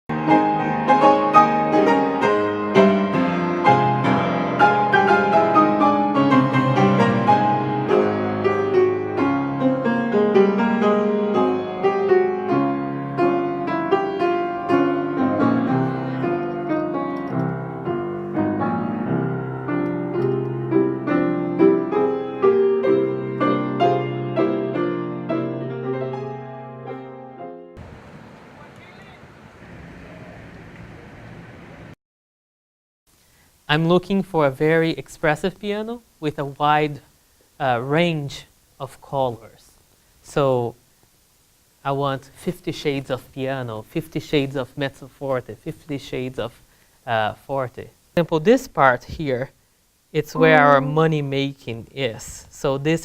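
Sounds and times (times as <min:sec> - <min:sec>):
solo piano piece: 0:00.1 - 0:30.4, 0:50.4 - 0:51.0.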